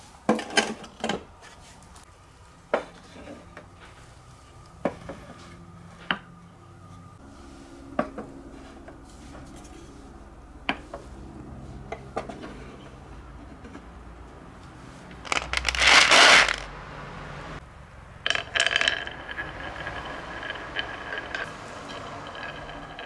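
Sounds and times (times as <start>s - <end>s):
marbles rolling down wooden run: 15.2s - 16.7s, 18.2s - 23.0s
faint ringing: 18.1s - 23.0s.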